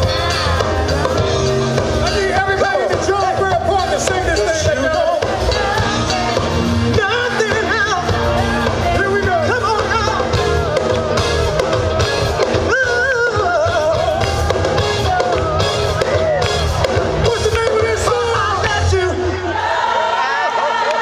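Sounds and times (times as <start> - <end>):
person singing over heavy beat: 0.0 - 19.2.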